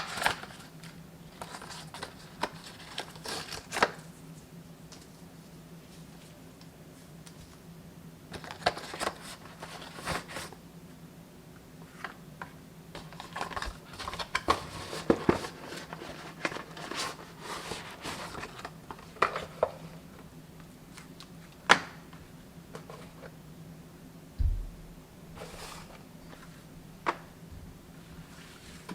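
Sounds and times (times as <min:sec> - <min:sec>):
faint steady hum: 0:00.0 - 0:28.9
packaging rustling and crinkling: 0:13.0 - 0:20.0.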